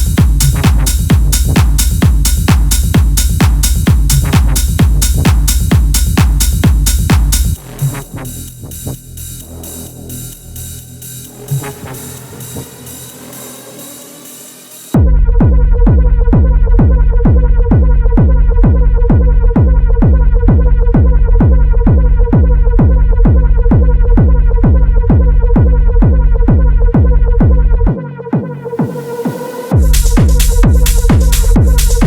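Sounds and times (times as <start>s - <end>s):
techno kick drum: 0.0s - 13.8s, 14.9s - 32.0s
rising noise sweep: 9.4s - 15.0s.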